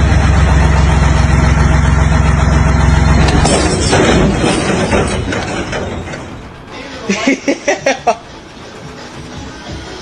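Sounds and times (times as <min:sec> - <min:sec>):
engine running: 0:00.0 - 0:10.0
clattering crash with impacts: 0:03.1 - 0:08.0.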